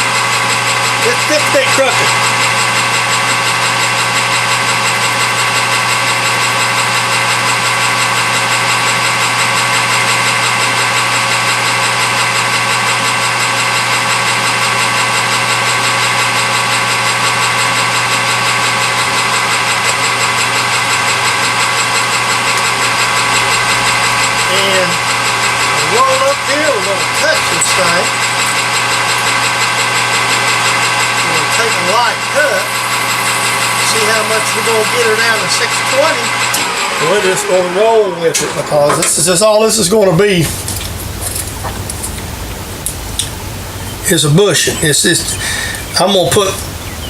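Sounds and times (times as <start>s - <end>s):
drive whine: 0.0s - 47.0s
lathe motor hum: 0.0s - 47.0s.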